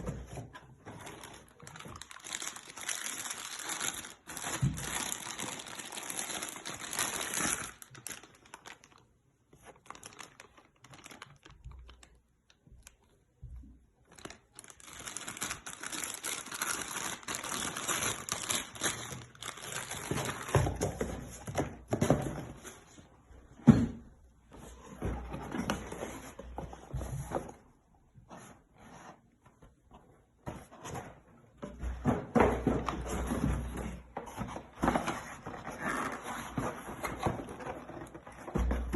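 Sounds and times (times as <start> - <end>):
packaging crinkling and tearing: 1.1 - 12.2, 14.0 - 20.8.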